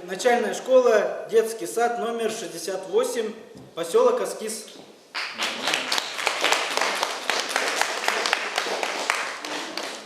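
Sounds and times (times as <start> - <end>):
audience applauding: 5.2 - 10.0.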